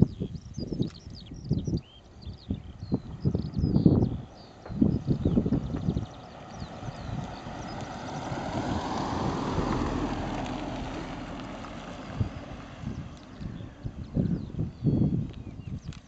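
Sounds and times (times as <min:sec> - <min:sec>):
vehicle passing by: 0:04.8 - 0:14.1.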